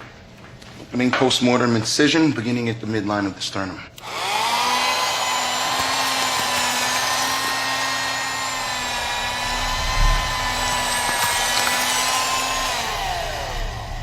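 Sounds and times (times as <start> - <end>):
electric bone saw whining: 4.0 - 14.0.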